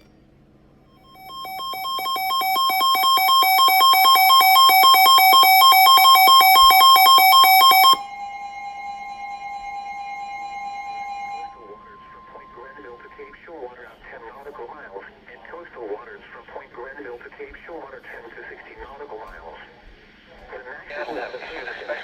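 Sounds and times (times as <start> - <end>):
two-pitch alarm beeps: 1.0 - 13.1
steady alert tone: 1.1 - 9.4.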